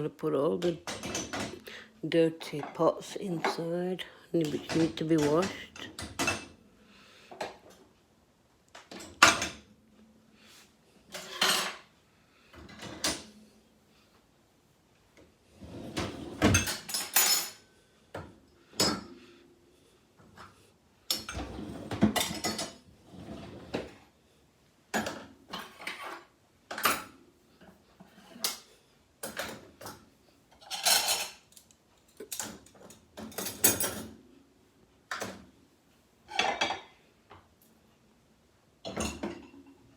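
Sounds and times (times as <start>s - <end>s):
dishes clattering: 11.1s - 11.9s, 15.9s - 17.6s, 21.1s - 22.8s, 29.2s - 31.5s, 32.2s - 34.2s, 36.3s - 37.0s, 38.8s - 39.8s.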